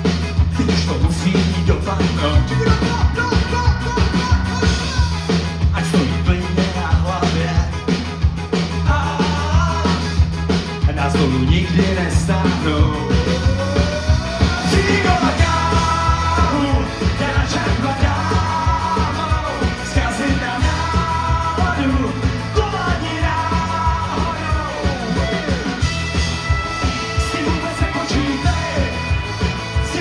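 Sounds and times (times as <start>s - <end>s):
ska band playing: 0.0s - 30.0s.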